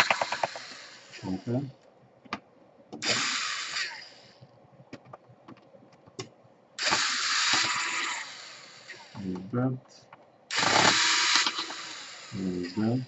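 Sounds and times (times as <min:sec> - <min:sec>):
electric screwdriver running: 0:03.0 - 0:04.0, 0:06.8 - 0:09.1, 0:10.5 - 0:12.4.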